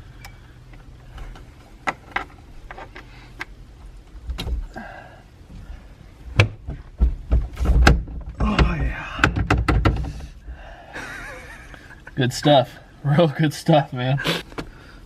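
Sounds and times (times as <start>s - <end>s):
parts clicking and knocking: 0.1s - 4.8s, 5.5s - 10.4s
heavy thumps: 5.5s - 10.6s.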